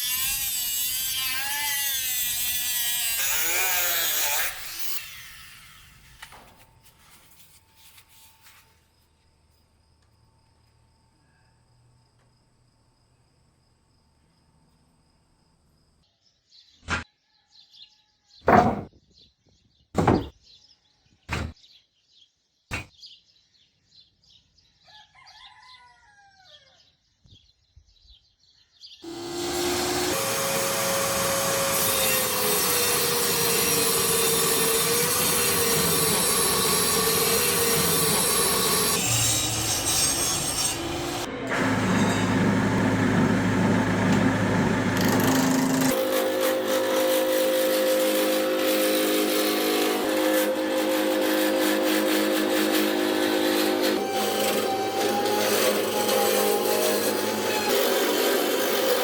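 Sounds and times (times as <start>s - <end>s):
power tool running: 0.0s - 6.3s, 29.0s - 59.0s
sharp knocks: 18.5s - 18.9s, 20.0s - 20.3s, 21.3s - 21.6s, 22.7s - 22.9s.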